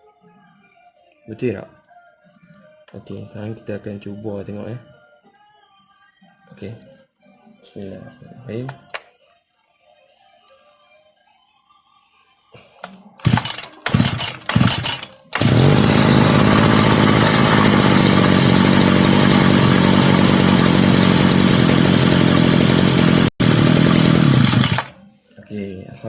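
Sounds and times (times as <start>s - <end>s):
brush cutter engine starting: 12.8s - 25.0s.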